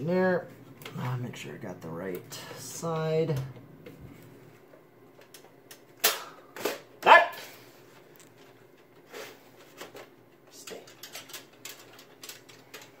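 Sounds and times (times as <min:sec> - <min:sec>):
dog barking: 0:07.0 - 0:07.5.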